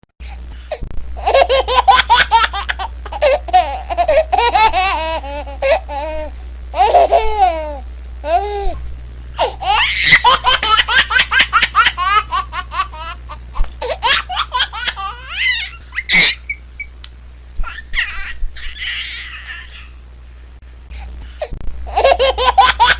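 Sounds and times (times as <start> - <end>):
low hum: 0.2 - 22.0
baby giggling and squealing: 1.2 - 8.8, 9.4 - 16.6, 17.6 - 20.0.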